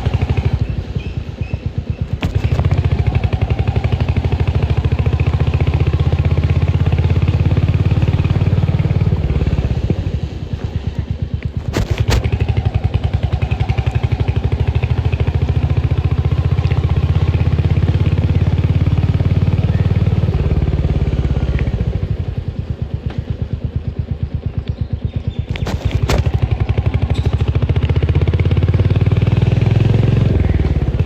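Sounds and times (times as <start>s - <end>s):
motorcycle engine thumping: 1.8s - 3.6s, 9.1s - 13.6s, 22.6s - 28.4s.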